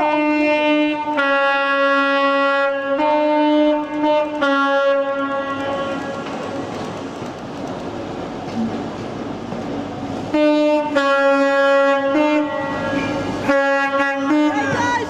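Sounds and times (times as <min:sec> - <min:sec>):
two-tone train horn: 0:00.0 - 0:06.6, 0:10.3 - 0:15.0.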